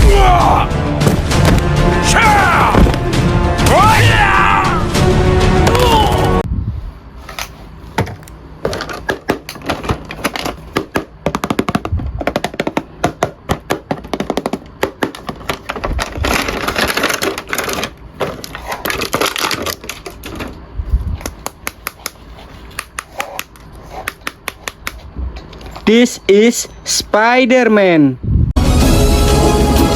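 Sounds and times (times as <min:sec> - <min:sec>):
packaging rustling: 0:13.6 - 0:20.6.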